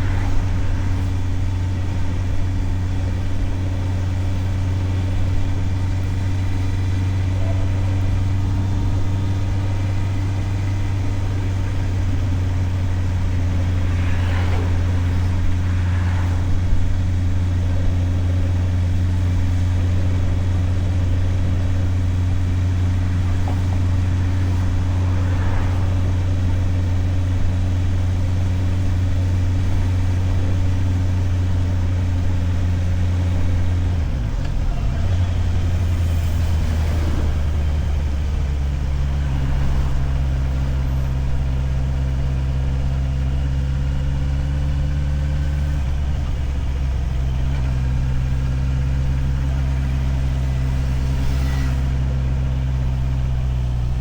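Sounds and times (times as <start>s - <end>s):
faint passing street noise: 0.0s - 54.0s
motorcycle engine running: 0.0s - 54.0s.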